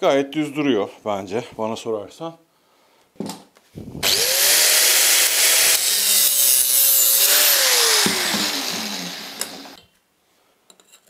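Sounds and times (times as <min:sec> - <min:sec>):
electric drill grinding: 0:04.0 - 0:09.8.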